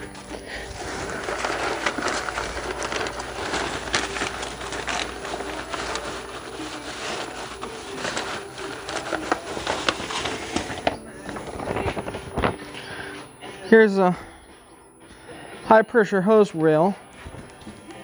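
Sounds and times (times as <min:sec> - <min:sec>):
paper rustling and crinkling: 0:00.0 - 0:13.3.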